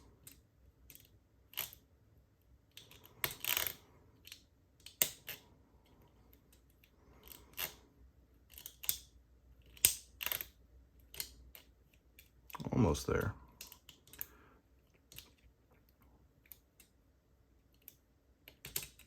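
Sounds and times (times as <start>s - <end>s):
lock pick clicking in padlock: 8.5s - 12.3s.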